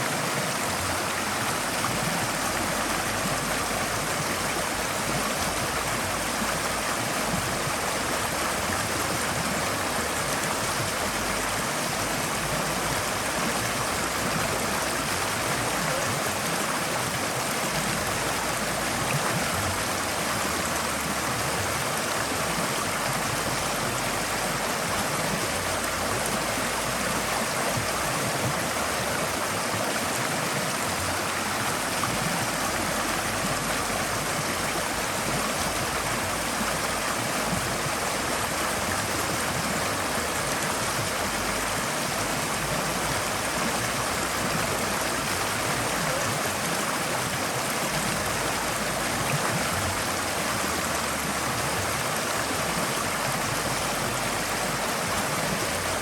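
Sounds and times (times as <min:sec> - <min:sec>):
stream water rushing over stones: 0:00.0 - 0:56.0.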